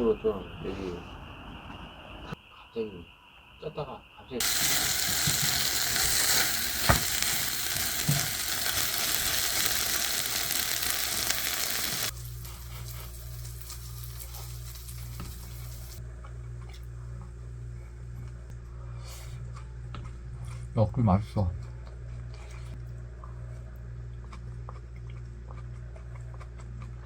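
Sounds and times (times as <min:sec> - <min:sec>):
food frying sizzle: 0:04.4 - 0:16.0.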